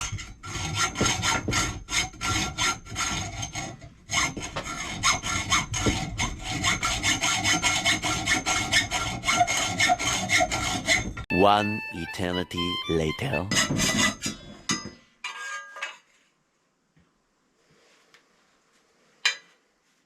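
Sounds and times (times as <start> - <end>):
hand saw strokes: 0.0 - 11.2, 13.4 - 14.4.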